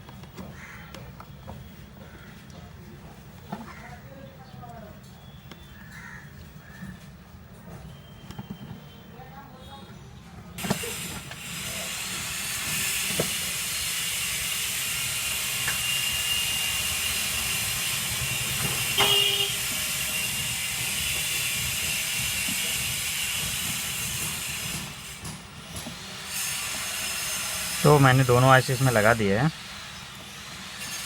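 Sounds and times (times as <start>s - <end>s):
short tone: 18.4s - 19.6s
steady hissing noise: 26.0s - 31.0s.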